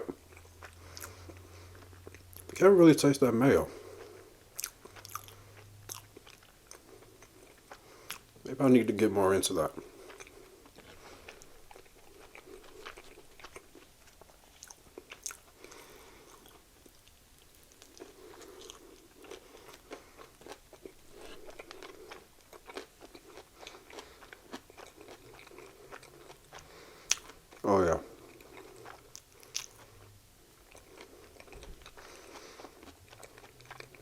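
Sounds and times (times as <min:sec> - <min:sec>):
wet chewing mouth clicks: 0:04.6 - 0:08.3, 0:28.3 - 0:30.0.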